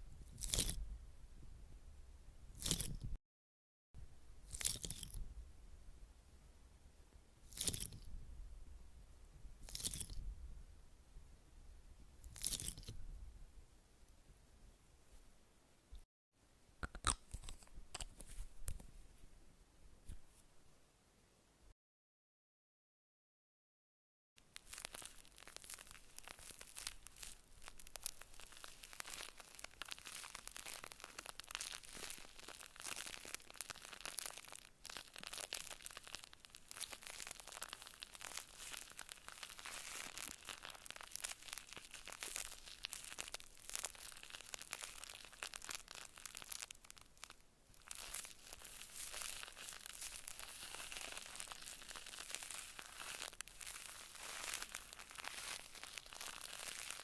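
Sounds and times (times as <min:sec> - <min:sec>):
crinkling and crackling: 0:02.6 - 0:03.2, 0:17.0 - 0:19.0, 0:24.4 - 0:57.0.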